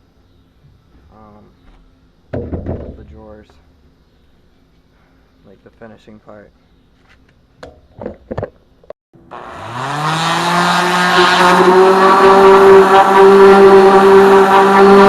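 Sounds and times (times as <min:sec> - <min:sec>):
electric sander motor humming: 0:09.2 - 0:15.0.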